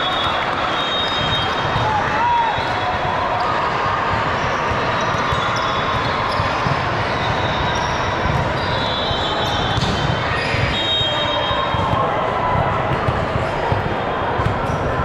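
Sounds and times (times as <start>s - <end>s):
sneaker squeaks: 0.0s - 2.9s, 4.2s - 12.0s
hubbub of voices: 0.0s - 15.0s.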